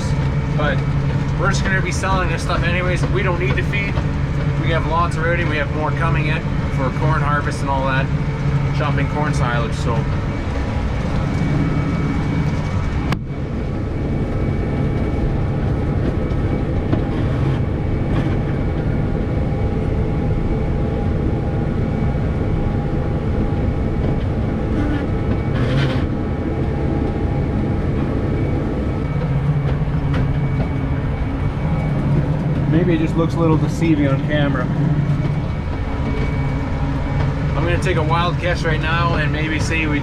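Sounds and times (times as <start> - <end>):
tractor engine running: 0.0 - 40.0
hay rake machinery clattering: 35.3 - 40.0.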